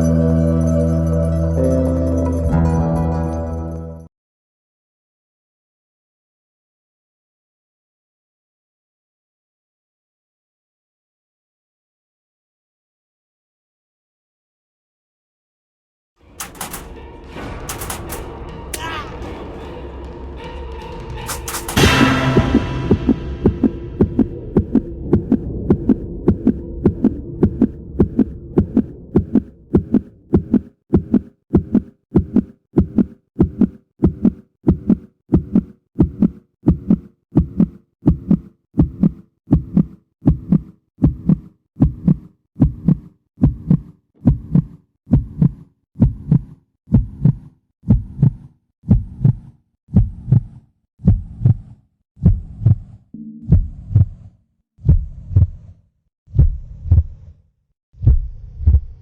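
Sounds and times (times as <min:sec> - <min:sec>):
low hum: 0:16.3 - 0:30.6, 0:53.2 - 0:55.7
low short thumps: 0:20.8 - 0:33.0, 0:53.4 - 0:55.6.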